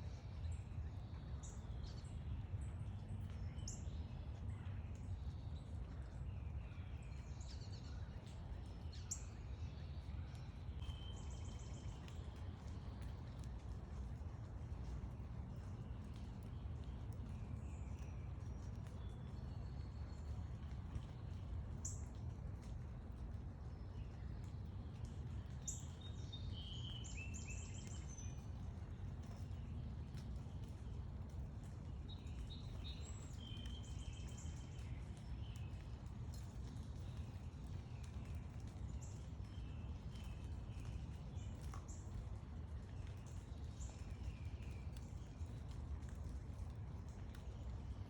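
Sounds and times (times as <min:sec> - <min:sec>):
low outdoor rumble: 0:00.0 - 0:48.0
small birds chirping: 0:23.6 - 0:48.0.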